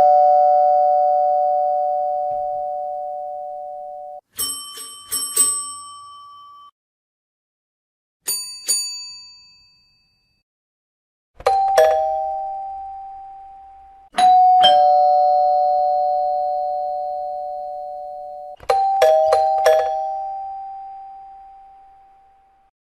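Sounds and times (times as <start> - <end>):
two-tone ding-dong door chime: 0.0 - 6.8, 8.3 - 10.4, 11.4 - 22.1
small high-pitched bell ringing: 4.4 - 6.8, 8.3 - 10.4, 14.2 - 22.1.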